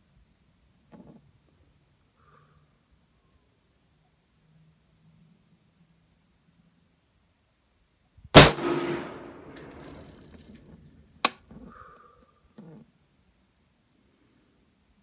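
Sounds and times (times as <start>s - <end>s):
rifle shot with echo: 8.4s - 9.7s.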